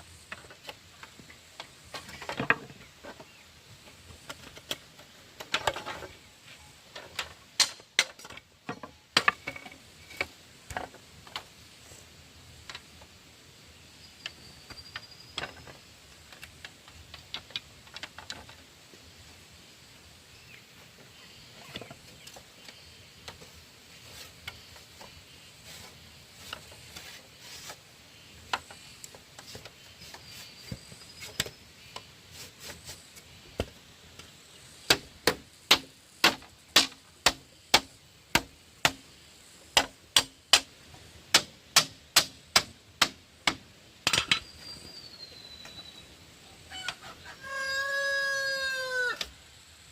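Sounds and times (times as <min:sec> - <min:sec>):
hand tool striking wood: 0:34.8 - 0:39.1, 0:39.7 - 0:40.7, 0:41.3 - 0:44.4.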